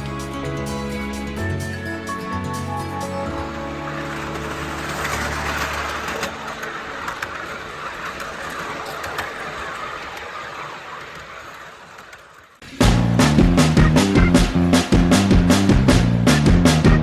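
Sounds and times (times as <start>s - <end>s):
miniature train rumbling on track: 0.0s - 17.0s
light clicks of train: 3.4s - 12.6s
loud music with a beat: 12.7s - 17.0s.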